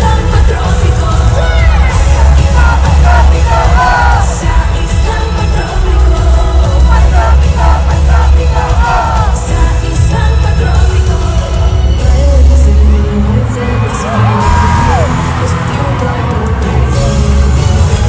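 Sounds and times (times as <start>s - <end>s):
booming bass: 0.0s - 13.2s
crowd yelling and whooping: 0.0s - 18.0s
live pop music over loudspeakers: 0.0s - 18.0s
person singing: 0.0s - 18.0s.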